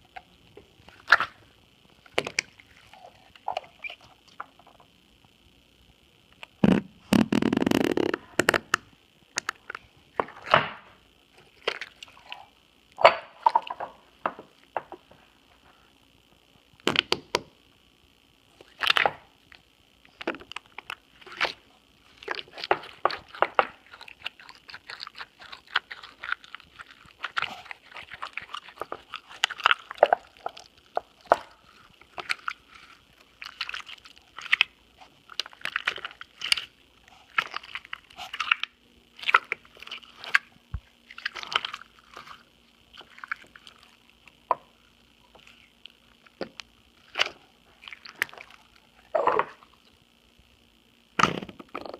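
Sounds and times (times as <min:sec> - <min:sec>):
slime squishing and popping: 0:06.4 - 0:09.8, 0:16.8 - 0:17.5, 0:22.2 - 0:44.6.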